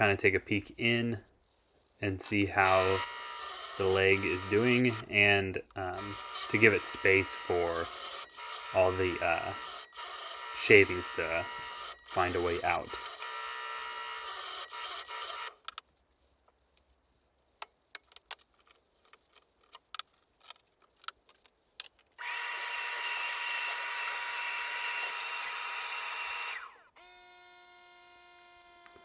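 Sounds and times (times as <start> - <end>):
electric drill boring into wood: 2.6 - 5.1, 6.0 - 15.6, 22.2 - 29.0.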